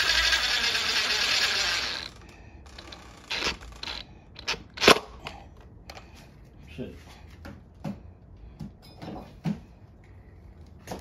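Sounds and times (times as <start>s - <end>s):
screwdriver ratcheting whir: 0.0s - 5.1s.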